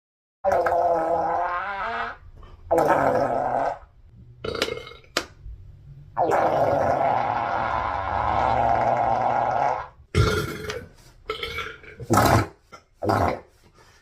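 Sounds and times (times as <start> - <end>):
long burp: 0.5 - 5.1, 6.2 - 12.5.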